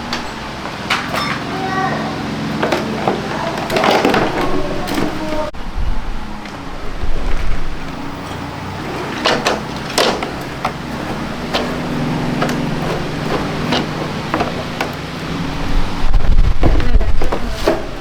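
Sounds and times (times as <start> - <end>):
motor humming: 0.0 - 18.0
tools clicking and knocking: 9.2 - 15.0.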